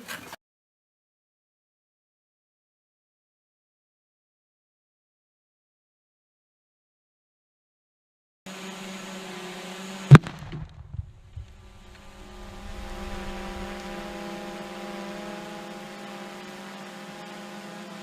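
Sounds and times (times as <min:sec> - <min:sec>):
loud explosion: 0:10.1 - 0:14.7
steady low hum: 0:10.1 - 0:17.0
low rumbling echo: 0:10.2 - 0:15.2.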